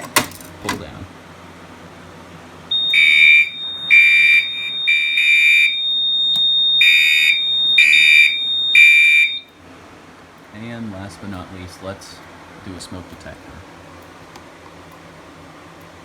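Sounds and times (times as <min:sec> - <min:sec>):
fire alarm horn blasts: 0:02.7 - 0:09.6
thin high whine: 0:02.7 - 0:09.6.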